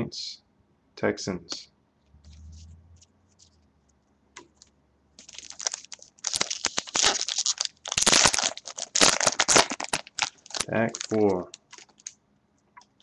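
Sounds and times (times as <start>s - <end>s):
wrapper tearing and crinkling: 5.2s - 12.1s.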